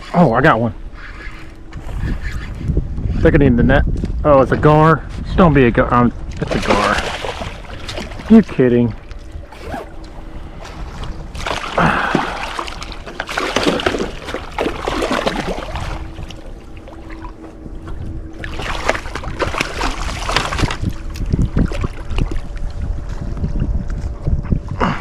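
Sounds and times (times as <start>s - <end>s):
wind noise on microphone: 0.0s - 13.1s, 17.6s - 25.0s
fish thrashing in water: 6.4s - 8.4s, 9.8s - 17.4s, 18.4s - 22.4s
water splashing: 6.4s - 22.5s.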